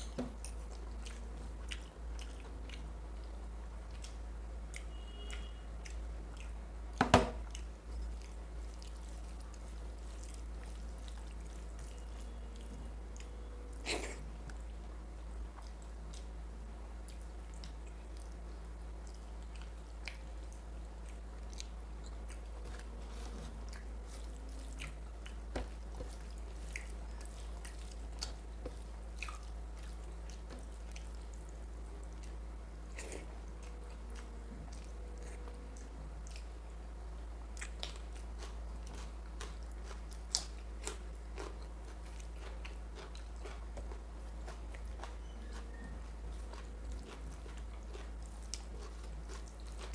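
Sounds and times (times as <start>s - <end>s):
steady low hum: 0.0s - 49.9s
person chewing and biting: 37.6s - 49.9s.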